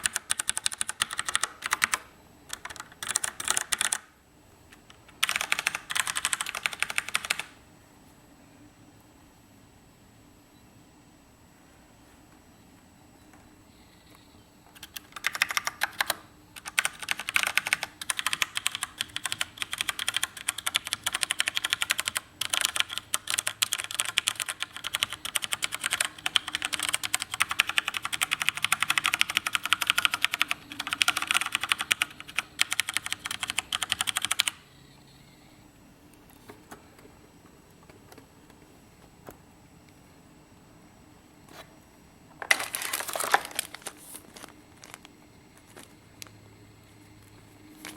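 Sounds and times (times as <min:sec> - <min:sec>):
fast typing on mechanical keyboard: 0:00.0 - 0:04.1, 0:04.8 - 0:07.5, 0:14.8 - 0:34.6.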